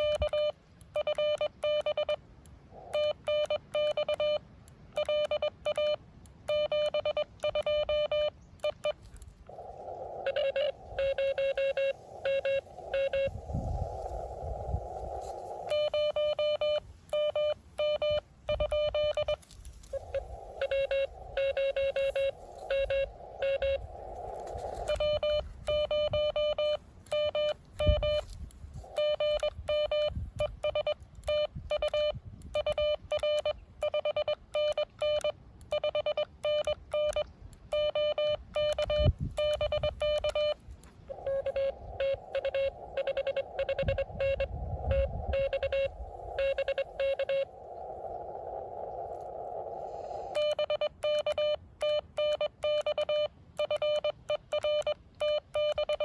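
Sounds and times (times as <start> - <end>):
morse code beeping: 0.0 - 9.1, 10.2 - 47.7, 50.0 - 56.0
faint morse code: 0.0 - 56.0
radio band hiss: 8.9 - 30.9, 39.7 - 51.0.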